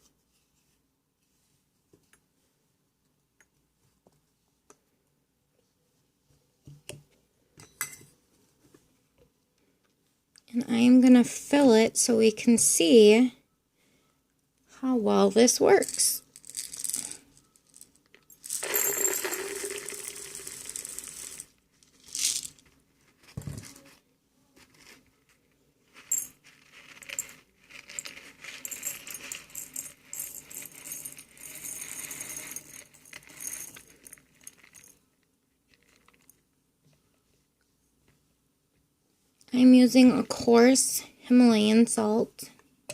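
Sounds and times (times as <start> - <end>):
salt crystals rattling into glass jar: 15.7 - 22.7, 26.0 - 35.0.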